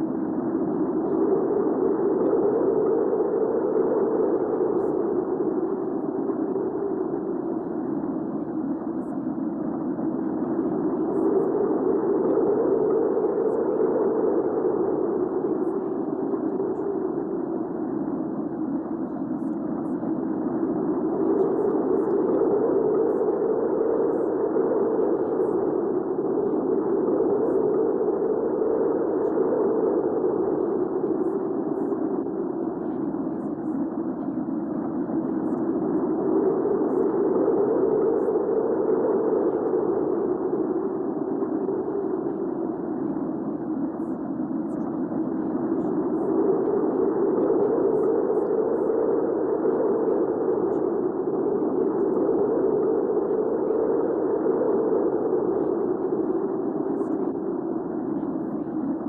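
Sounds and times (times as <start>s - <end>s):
strong rushing wind: 45.1s - 56.8s.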